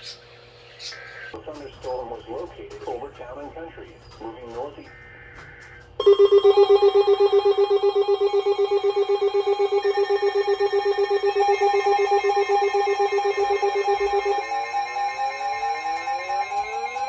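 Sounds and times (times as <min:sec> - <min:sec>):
pulsing electronic alert tone: 0:06.0 - 0:17.0
warbling tone: 0:06.0 - 0:17.0.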